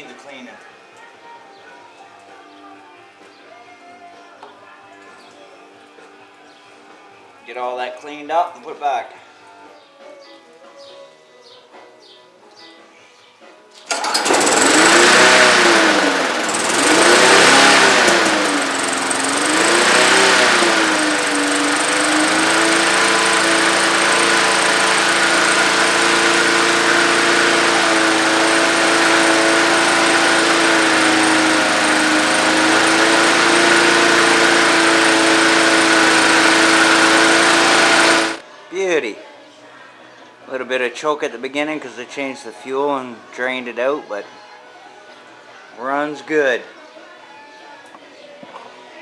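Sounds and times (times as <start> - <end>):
lawnmower engine surging: 13.9 - 38.4.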